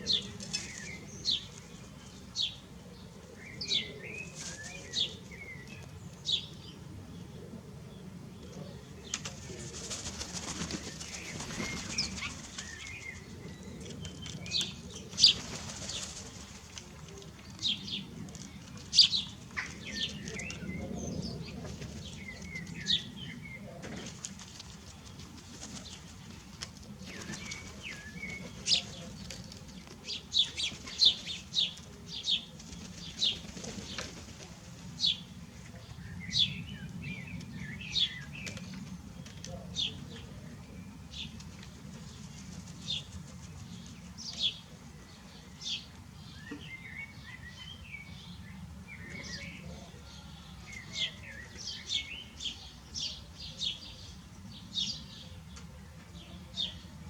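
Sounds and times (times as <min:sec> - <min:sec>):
wings flapping: 0:09.1 - 0:12.8, 0:15.2 - 0:16.9.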